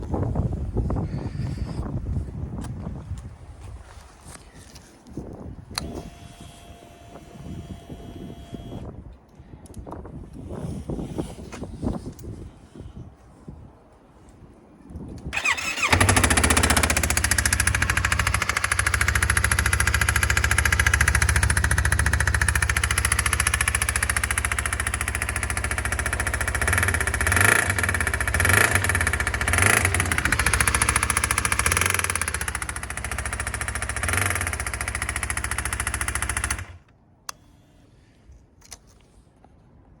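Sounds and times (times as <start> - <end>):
motorcycle engine running and revving: 15.4 - 36.8
electric starter cranking: 15.4 - 36.9.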